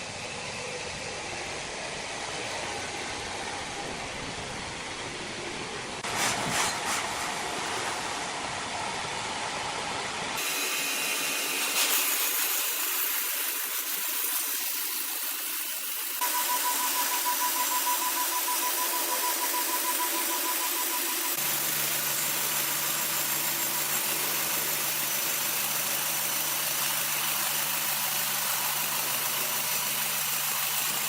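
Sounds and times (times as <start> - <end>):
pulsing high whine: 0.0 - 31.0
sawmill machinery cutting wood: 6.0 - 9.2, 10.1 - 31.0.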